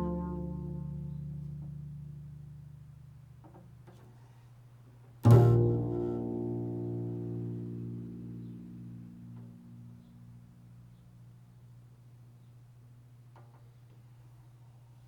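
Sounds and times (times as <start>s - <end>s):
deep ringing instrument notes: 0.0s - 2.2s.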